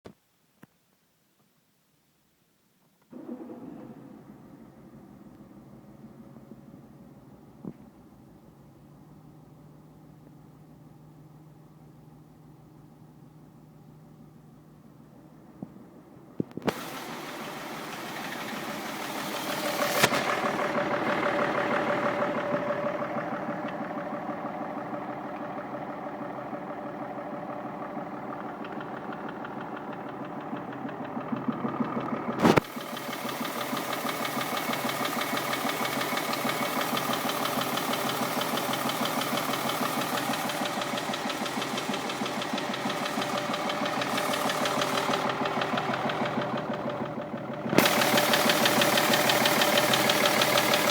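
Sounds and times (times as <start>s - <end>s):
diesel engine knocking: 16.7s - 50.9s.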